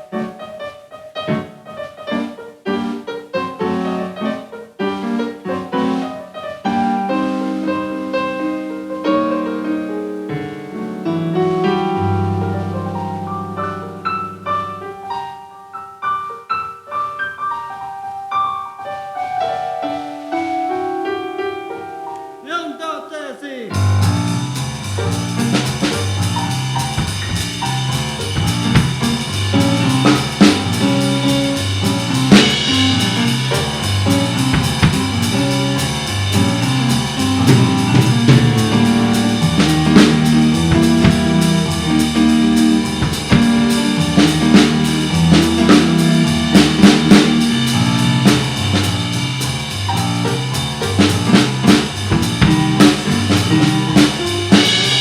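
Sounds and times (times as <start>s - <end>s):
piano-sounding keyboard solo: 0.0s - 55.0s
rock band playing: 23.7s - 55.0s.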